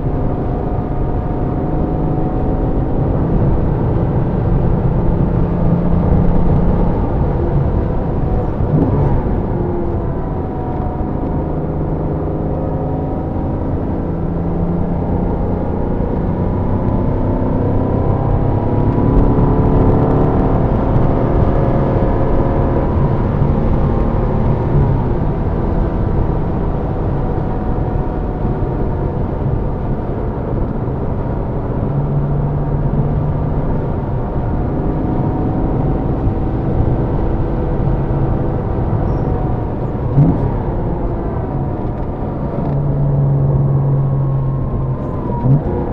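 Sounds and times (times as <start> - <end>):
car engine revving: 0.0 - 45.9
road and tyre rumble: 0.0 - 45.9.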